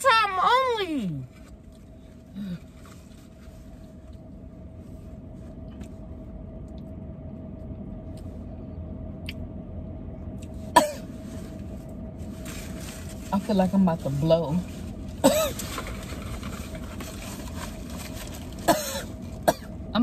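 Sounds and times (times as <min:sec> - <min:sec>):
car cabin hum: 0:00.0 - 0:20.0
person coughing: 0:10.7 - 0:11.1, 0:15.2 - 0:15.6, 0:18.6 - 0:19.8.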